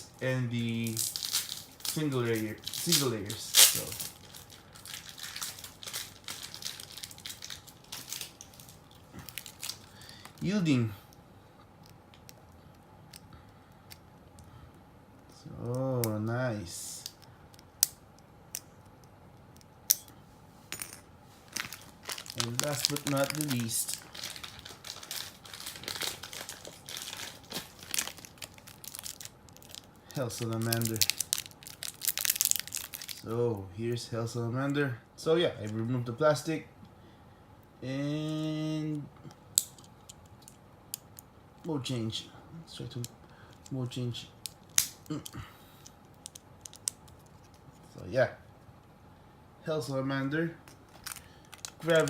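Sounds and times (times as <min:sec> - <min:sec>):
plastic packaging crinkling: 0:00.0 - 0:10.8, 0:21.4 - 0:33.3, 0:46.0 - 0:47.8, 0:50.7 - 0:52.0.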